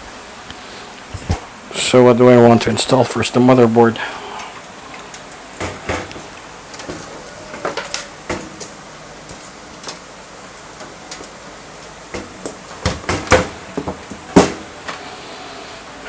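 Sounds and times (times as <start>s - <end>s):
computer parts knocking: 12.1s - 14.7s.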